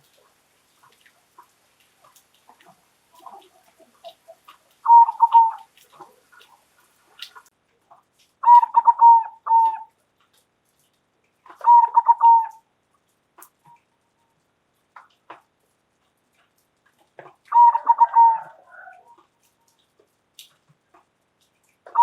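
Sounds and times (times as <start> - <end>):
dove cooing: 3.1 - 7.4, 8.4 - 9.9, 11.6 - 12.6, 17.5 - 19.7.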